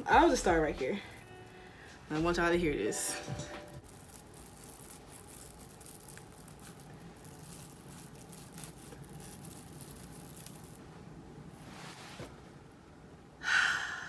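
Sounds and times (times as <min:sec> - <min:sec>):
velcro rollers tearing from hair: 0:00.1 - 0:10.9.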